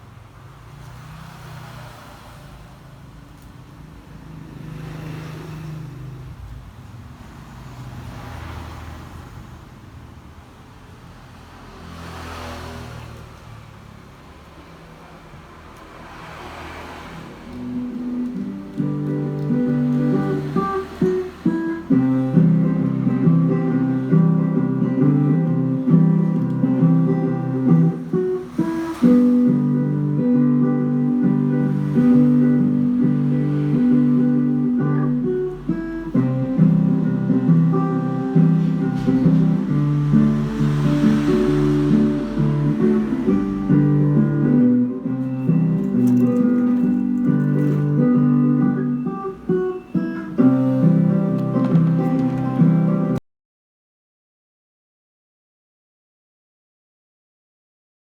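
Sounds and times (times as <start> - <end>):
road traffic passing: 0.0 - 53.2
guitar plucked notes and chords: 17.4 - 53.2.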